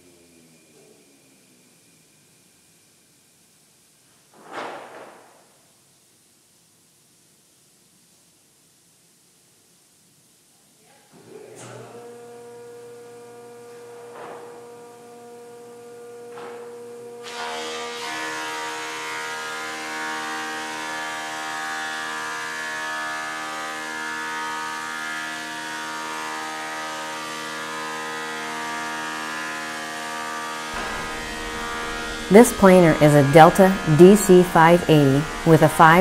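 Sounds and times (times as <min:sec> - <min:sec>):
planer cutting wood board: 0:11.6 - 0:36.0
planer motor humming: 0:11.6 - 0:36.0
knocks: 0:30.8 - 0:32.2.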